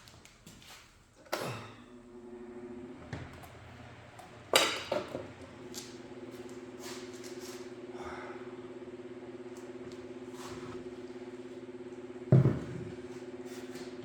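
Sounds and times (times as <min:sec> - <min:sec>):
hard object knocking: 0:12.3 - 0:12.9.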